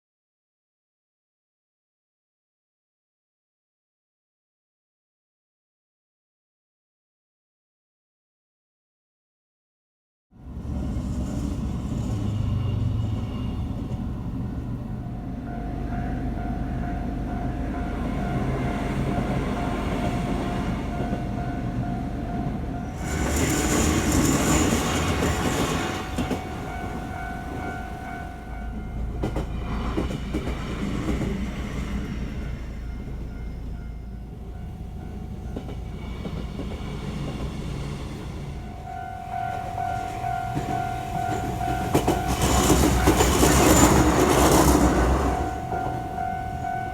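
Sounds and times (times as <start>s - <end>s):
electric train passing: 10.4s - 46.9s
level-crossing warning bell: 12.0s - 46.9s.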